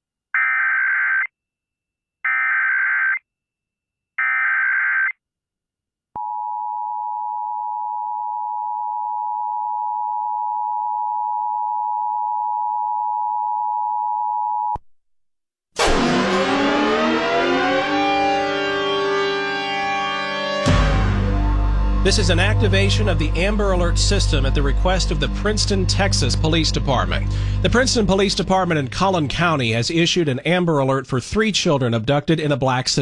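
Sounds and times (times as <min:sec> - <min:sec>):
siren-like swooping sound: 0:15.8 - 0:29.7.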